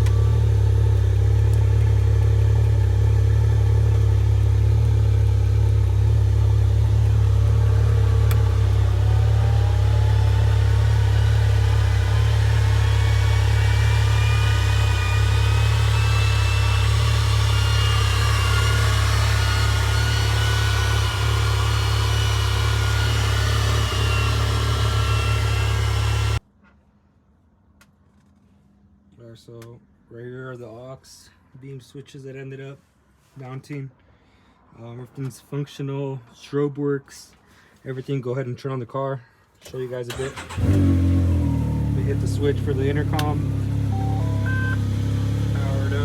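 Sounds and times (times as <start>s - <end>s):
rising whine: 0.0s - 26.4s, 40.5s - 46.0s
vehicle engine rumbling: 0.0s - 26.4s, 40.1s - 46.0s.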